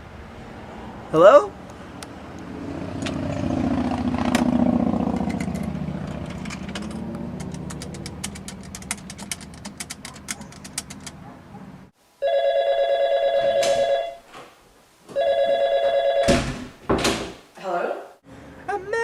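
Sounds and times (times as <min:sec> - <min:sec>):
rapid clicks: 0:05.2 - 0:11.2
telephone trilling ring: 0:12.2 - 0:14.2, 0:15.2 - 0:16.4.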